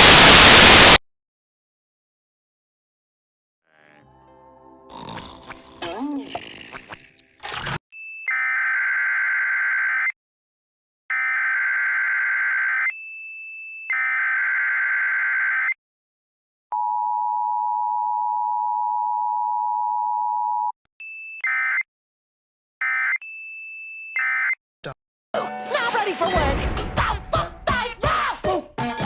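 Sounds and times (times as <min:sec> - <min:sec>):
screeching digital data bursts: 0:00.0 - 0:01.0
short high beep: 0:00.0 - 0:01.0.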